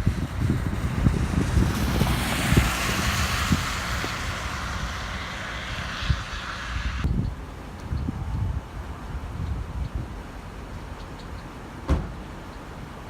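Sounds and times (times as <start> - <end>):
wind buffeting microphone: 0.0 - 10.4.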